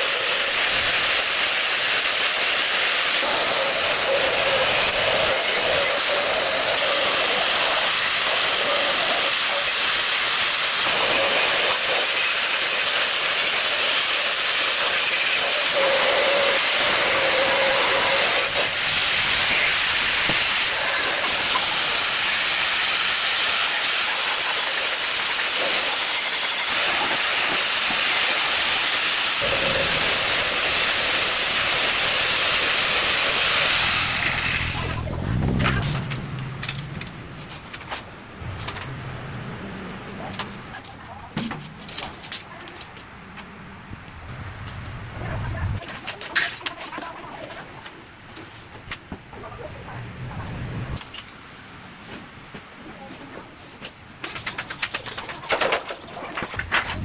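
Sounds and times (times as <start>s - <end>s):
loud steady hiss: 0.0s - 36.5s
low rumble: 33.9s - 40.8s, 43.7s - 45.8s, 49.4s - 51.0s.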